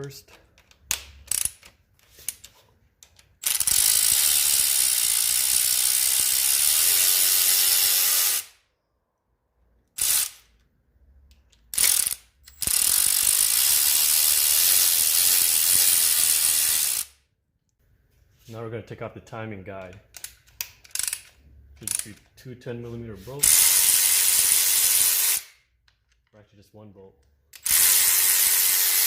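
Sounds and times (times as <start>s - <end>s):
ratchet clicking: 0.6s - 8.5s, 9.9s - 10.6s, 11.3s - 17.2s, 20.1s - 22.1s, 23.4s - 25.6s, 27.5s - 29.0s.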